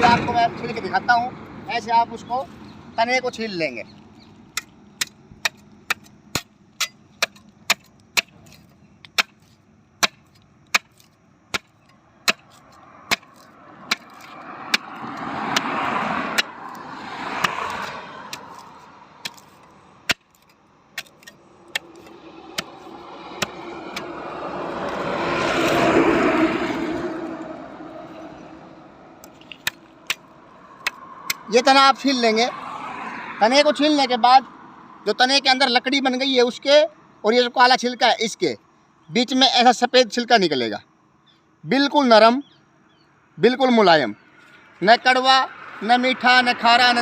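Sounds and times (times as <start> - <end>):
road traffic: 0.0 - 47.0
blade peeling bark: 4.0 - 28.4, 29.2 - 31.6.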